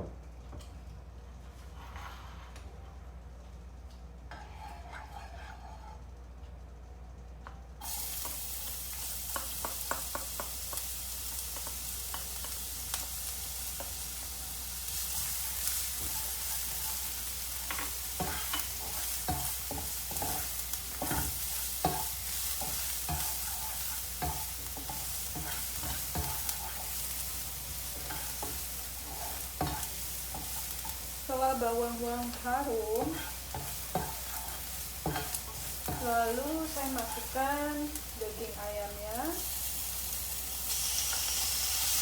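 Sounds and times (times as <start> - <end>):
spatula knocking and scraping pan: 4.3 - 6.0, 9.3 - 10.9, 14.9 - 38.6
garlic sizzling in hot oil: 7.8 - 42.0.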